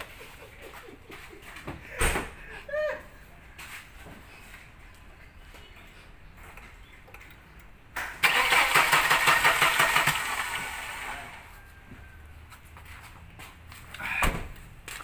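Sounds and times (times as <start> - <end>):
engine cranking by starter: 8.0 - 11.5.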